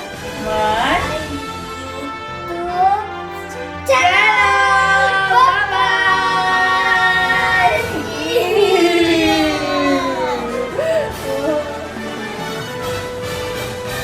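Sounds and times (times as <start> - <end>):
background music: 0.0 - 14.0
child singing without words: 1.9 - 12.0.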